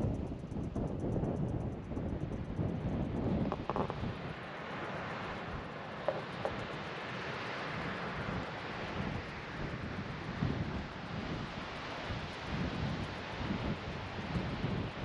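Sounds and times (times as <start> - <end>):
wind rumbling on microphone: 0.0 - 15.0.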